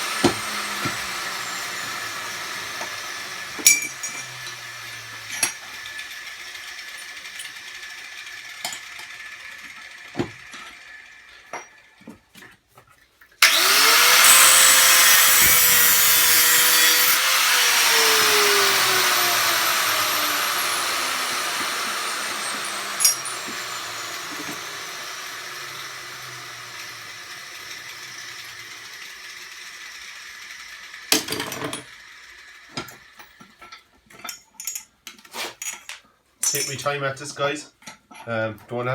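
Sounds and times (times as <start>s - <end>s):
electric power tool whirring: 0.0s - 12.2s, 13.4s - 33.6s
scrap metal clinking: 0.3s - 7.6s, 19.3s - 24.9s, 32.7s - 38.4s.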